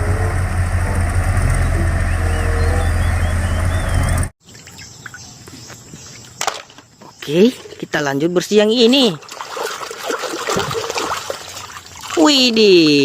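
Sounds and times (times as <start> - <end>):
engine-like rumble: 0.0 - 4.3.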